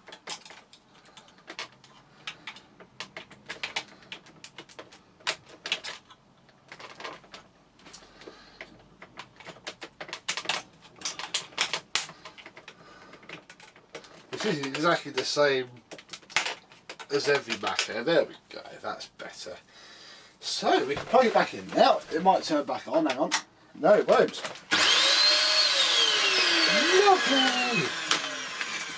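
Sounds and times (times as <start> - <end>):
plastic vacuum cleaner parts clicking: 0.0 - 18.0, 24.1 - 28.9.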